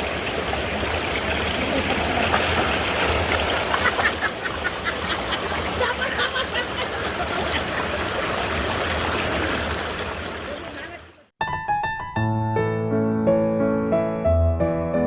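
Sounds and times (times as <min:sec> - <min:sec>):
brook running: 0:00.0 - 0:11.4.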